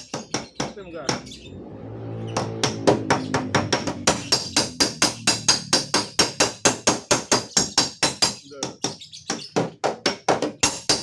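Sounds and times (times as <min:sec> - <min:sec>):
background music: 0:00.8 - 0:07.2.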